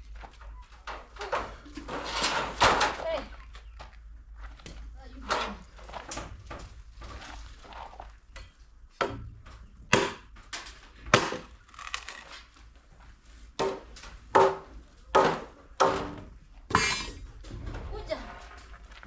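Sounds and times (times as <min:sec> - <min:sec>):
machete chopping wood: 0:09.9 - 0:10.3, 0:11.1 - 0:12.0, 0:13.6 - 0:16.2
wood splintering: 0:11.1 - 0:12.5.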